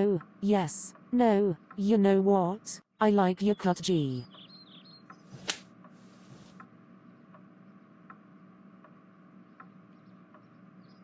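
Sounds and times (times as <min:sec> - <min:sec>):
sharp click: 0:05.4 - 0:05.6.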